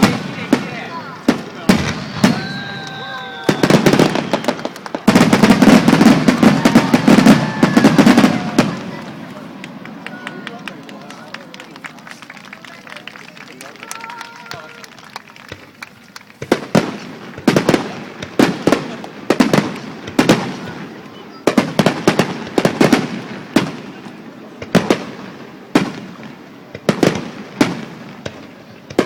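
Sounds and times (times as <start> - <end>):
fireworks bursting: 0.0 - 29.0.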